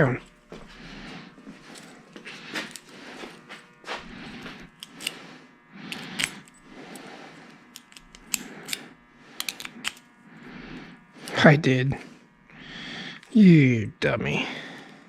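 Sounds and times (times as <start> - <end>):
key clicking in lock: 9.4 - 10.0.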